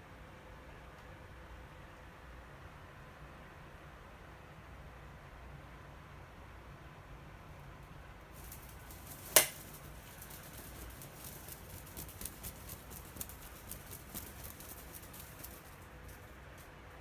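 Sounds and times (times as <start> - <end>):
cat toy ticking and rustling: 8.4 - 16.7.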